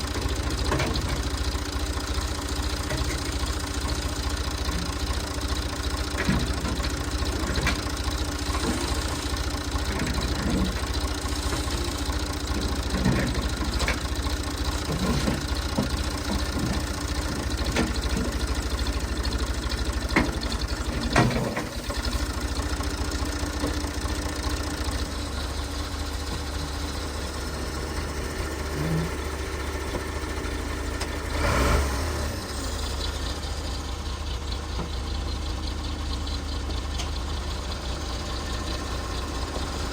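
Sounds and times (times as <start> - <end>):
tractor engine running: 0.0 - 39.9
sharp knocks and clanks: 19.3 - 22.3.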